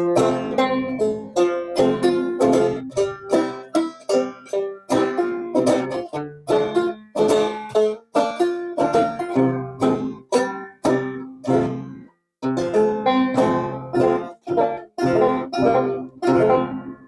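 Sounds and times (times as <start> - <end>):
banjo playing: 0.0 - 17.0.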